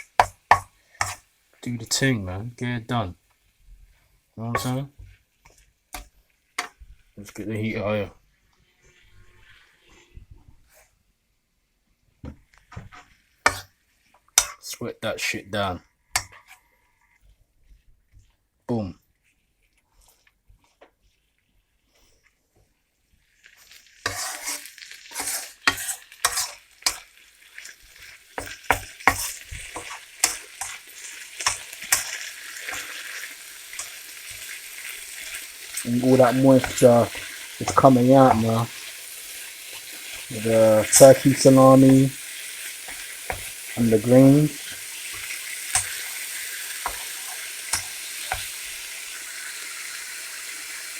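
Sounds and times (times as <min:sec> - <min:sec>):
utensil scraping a pan: 0:00.0 - 0:01.3, 0:04.5 - 0:06.9, 0:12.8 - 0:14.7, 0:23.4 - 0:48.8
food sizzling in a pan: 0:00.0 - 0:11.0, 0:12.2 - 0:18.4, 0:19.0 - 0:50.9.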